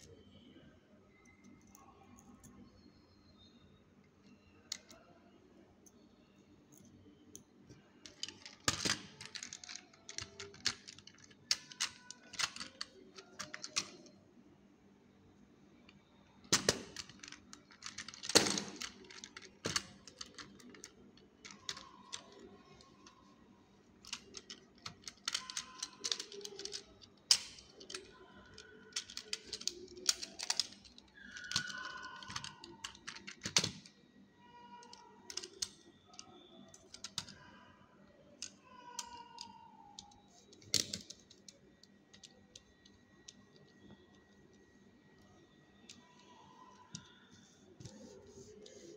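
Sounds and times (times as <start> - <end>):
plastic parts clicking and tapping: 6.7 - 14.2, 15.9 - 23.3, 24.0 - 33.9, 34.8 - 37.5, 38.4 - 44.6, 45.2 - 47.2.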